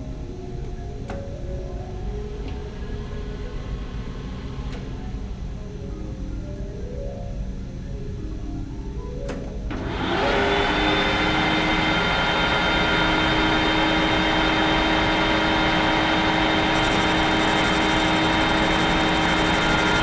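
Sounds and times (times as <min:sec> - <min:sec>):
metal lathe motor whine: 0:09.7 - 0:20.0.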